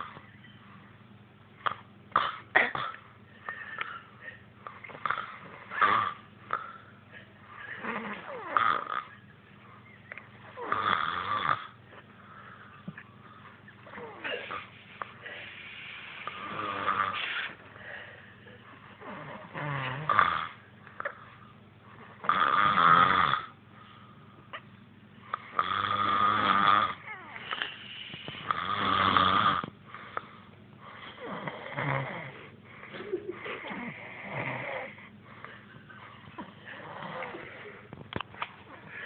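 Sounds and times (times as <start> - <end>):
person snoring: 10.6 - 11.8, 13.9 - 17.6, 19.0 - 20.6, 25.4 - 29.7, 31.0 - 32.5, 33.6 - 35.1, 36.6 - 37.8.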